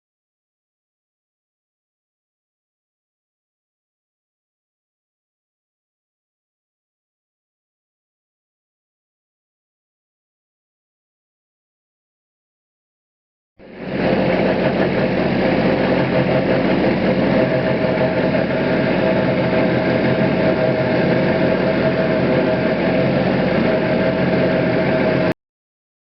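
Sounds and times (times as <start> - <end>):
engine running steadily: 13.6 - 25.4.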